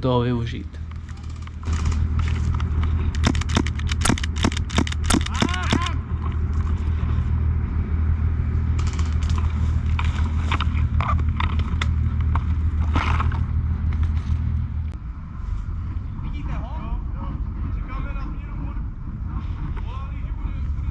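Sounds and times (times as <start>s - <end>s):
vehicle engine rumble: 0.0s - 20.9s
airsoft gunfire pops: 3.2s - 6.0s.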